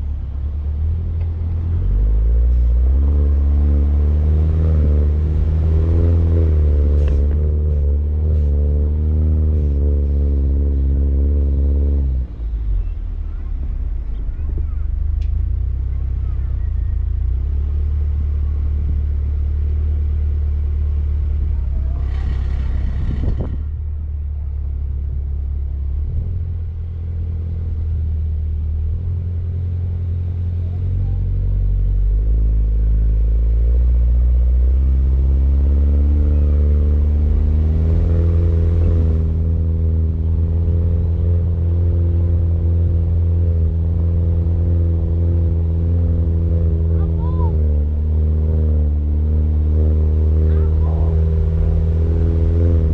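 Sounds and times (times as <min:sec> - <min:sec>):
car engine running: 0:00.0 - 0:52.9.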